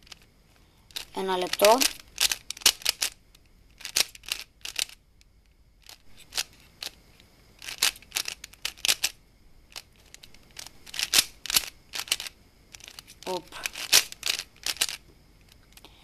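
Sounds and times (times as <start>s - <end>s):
puzzle cube plastic clicks: 0.9s - 15.9s.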